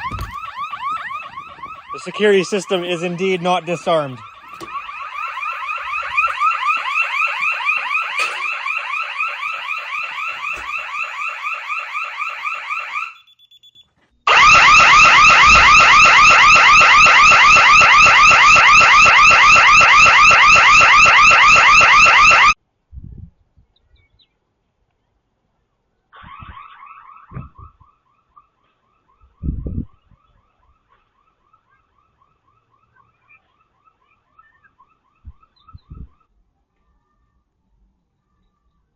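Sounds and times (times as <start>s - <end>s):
burglar alarm siren chirping: 0.0s - 22.6s, 26.2s - 36.3s.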